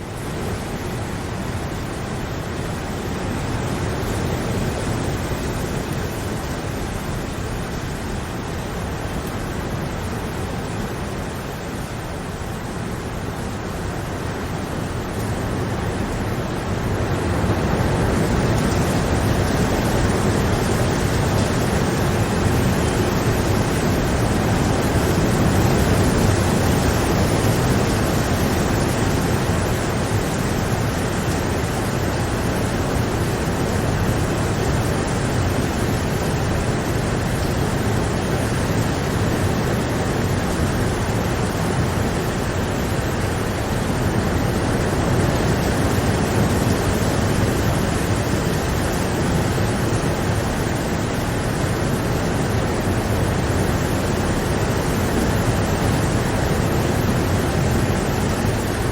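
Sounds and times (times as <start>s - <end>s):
steady rain falling: 0.0s - 58.9s.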